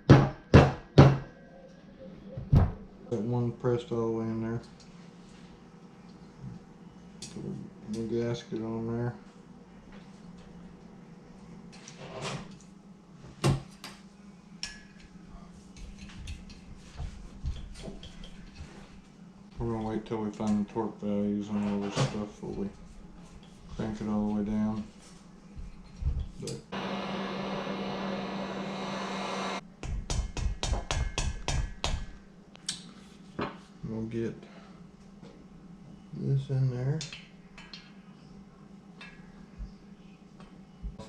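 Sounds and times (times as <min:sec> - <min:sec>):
steady low hum: 0:12.4 - 0:41.0
small electric motor humming: 0:26.7 - 0:29.6.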